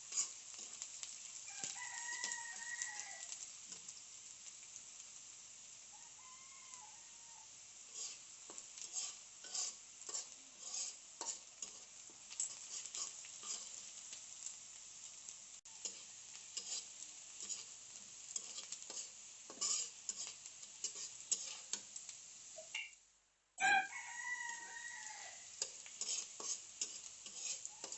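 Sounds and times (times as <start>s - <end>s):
spatula scraping a pan: 0.0s - 3.9s, 7.8s - 14.0s, 15.8s - 22.0s, 24.3s - 27.9s
food sizzling in oil: 0.0s - 27.9s.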